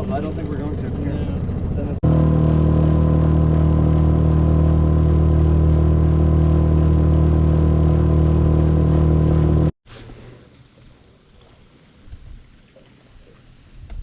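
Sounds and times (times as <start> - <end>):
boat motor droning: 0.1 - 9.8.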